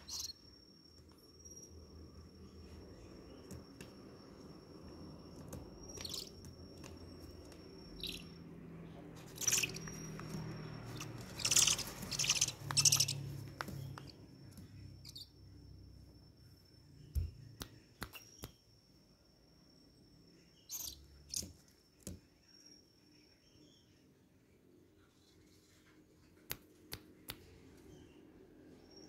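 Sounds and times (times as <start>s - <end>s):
high cricket trill: 0.0s - 24.0s
owl chicks hissing: 6.0s - 6.3s, 9.2s - 14.1s.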